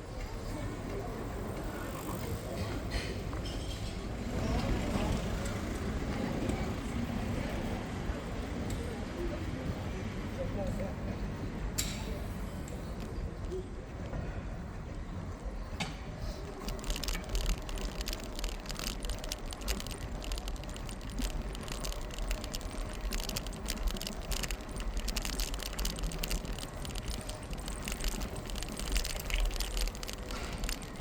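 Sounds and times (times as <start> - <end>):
road and wind rumble: 0.7 - 31.0
bicycle rattling and ticking: 1.6 - 7.7, 16.3 - 31.0.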